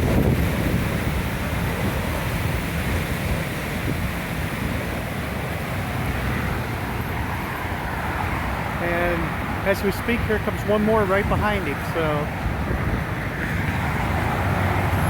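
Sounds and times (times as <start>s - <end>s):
distant jet airplane landing: 0.0s - 15.0s
gusty wind buffeting microphone: 0.0s - 15.0s.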